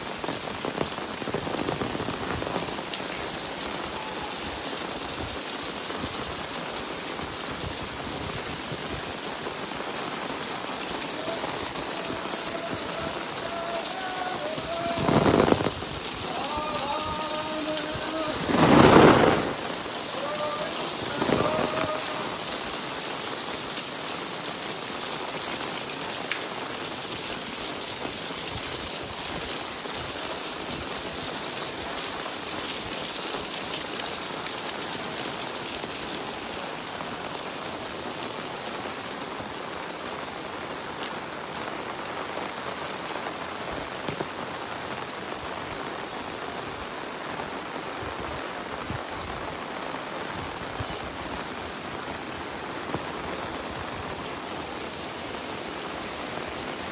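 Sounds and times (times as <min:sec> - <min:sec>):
steady rain hiss: 0:00.0 - 0:56.9.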